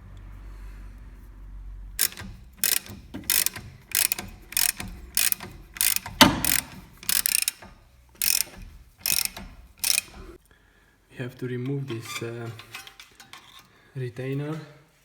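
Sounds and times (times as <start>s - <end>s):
ratchet wrench clicking: 2.0s - 10.4s.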